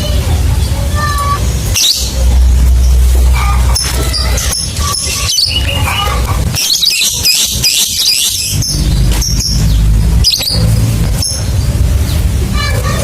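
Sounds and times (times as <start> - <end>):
low hum: 0.0 - 7.2
lovebird chirping and trilling: 1.6 - 12.2.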